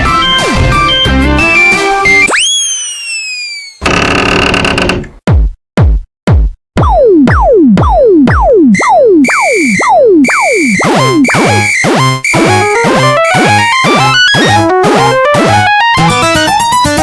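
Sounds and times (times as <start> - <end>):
high synth tones: 6.8 - 16.2
stepped run of synth notes: 6.8 - 17.0.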